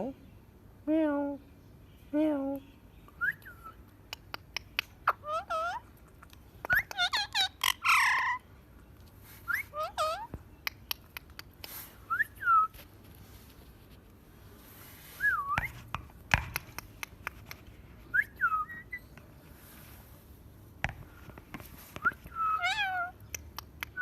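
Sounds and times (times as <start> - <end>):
parrot whistling calls: 22.1 - 23.1.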